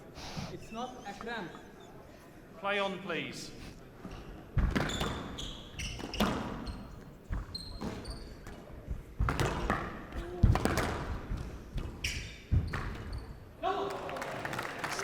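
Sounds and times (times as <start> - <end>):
shoe squeaks: 4.9 - 8.4, 12.0 - 13.4
squash ball struck by rackets: 9.2 - 11.9.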